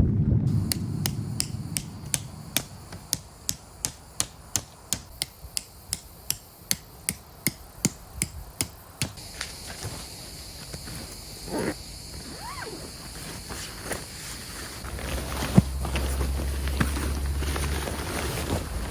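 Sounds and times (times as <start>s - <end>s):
low wind rumble: 0.0s - 6.0s, 14.8s - 18.9s
light clicking: 0.6s - 7.2s.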